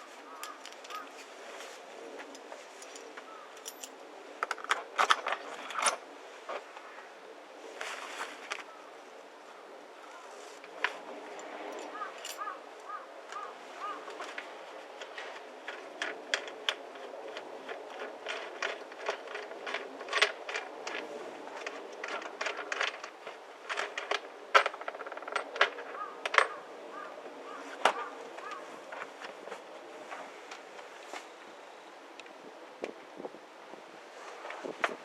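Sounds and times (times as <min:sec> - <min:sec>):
metallic clicks and clinks: 0:02.8 - 0:06.0, 0:11.4 - 0:12.5.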